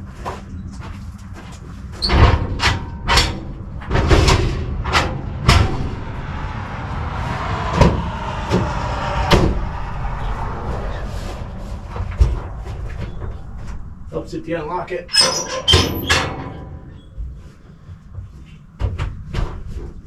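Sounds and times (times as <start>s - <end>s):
low steady rumble: 2.2s - 17.4s.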